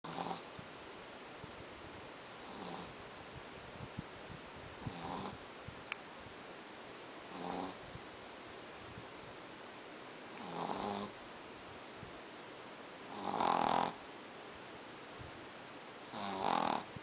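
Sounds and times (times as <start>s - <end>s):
dog snoring: 0.0s - 0.5s, 2.4s - 3.0s, 4.8s - 5.4s, 7.3s - 7.8s, 10.3s - 11.2s, 13.1s - 14.0s, 16.1s - 16.9s.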